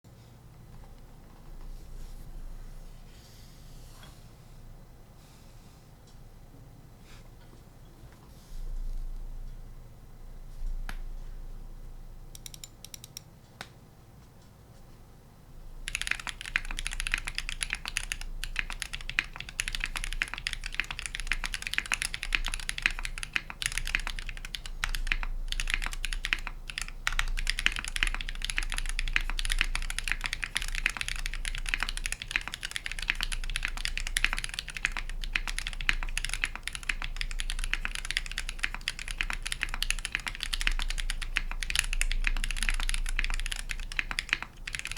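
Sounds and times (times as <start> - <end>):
mechanical keyboard typing: 15.8 - 44.9.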